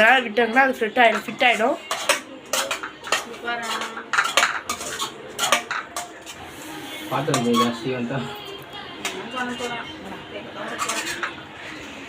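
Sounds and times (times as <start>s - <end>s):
metal utensil clinking on pan: 1.0s - 6.4s, 7.3s - 7.8s, 10.6s - 11.4s.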